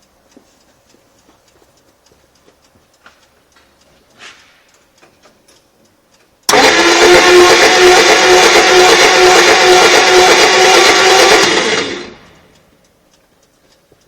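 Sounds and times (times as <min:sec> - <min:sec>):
faint ticks: 0:00.0 - 0:06.5, 0:12.3 - 0:14.0
car engine running with whine: 0:06.5 - 0:12.6.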